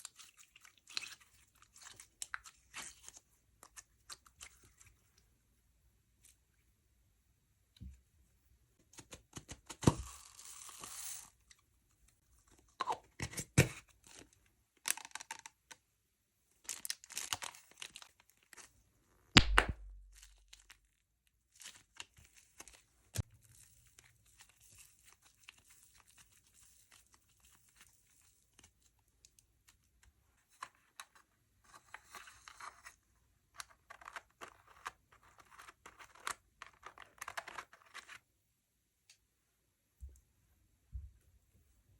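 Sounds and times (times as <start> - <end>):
loud thud: 19.4 - 20.2.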